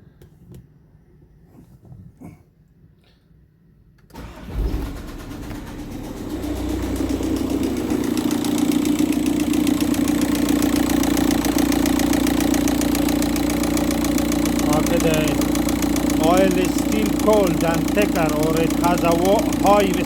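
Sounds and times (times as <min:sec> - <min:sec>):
diesel engine idling: 0:04.2 - 0:20.0
engine knocking: 0:04.2 - 0:20.0.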